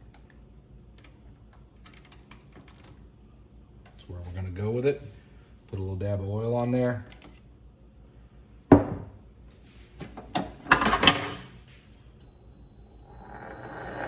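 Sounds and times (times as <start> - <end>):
lathe motor whining: 12.7 - 14.0.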